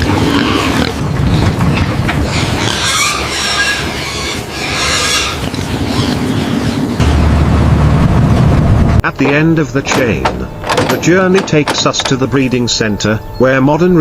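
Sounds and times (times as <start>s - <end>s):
pigs squealing: 0.0s - 7.0s
steady low rumble: 5.4s - 10.6s.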